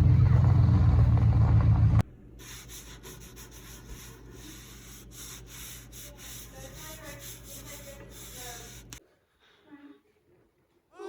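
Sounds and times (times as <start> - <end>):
low vehicle rumble: 0.0 - 2.1
rasping rubbing hiss: 2.4 - 9.0.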